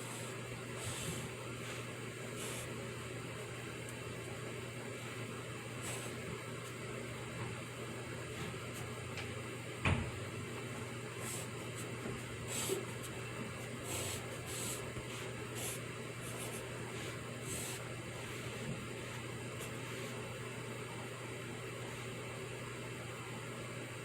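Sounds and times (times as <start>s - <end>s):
pencil scratching on paper: 11.2s - 20.2s.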